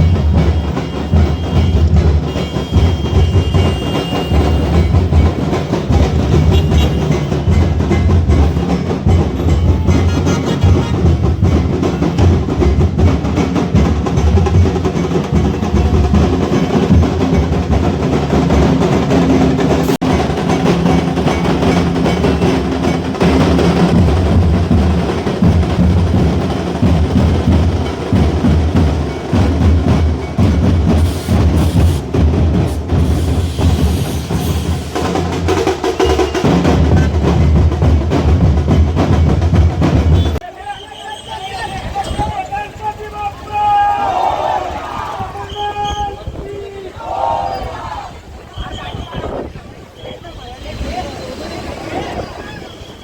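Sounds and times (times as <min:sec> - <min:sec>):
heavy low drum beats with rolls: 0:00.0 - 0:40.4.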